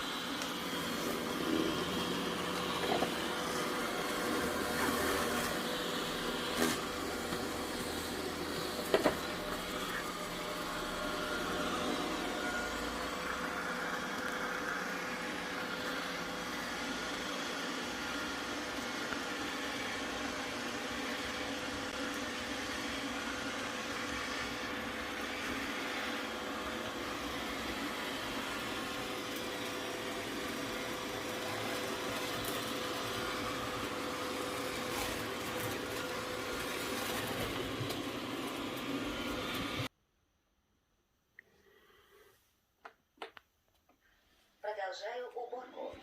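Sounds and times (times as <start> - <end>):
robot vacuum humming: 0.0 - 39.9.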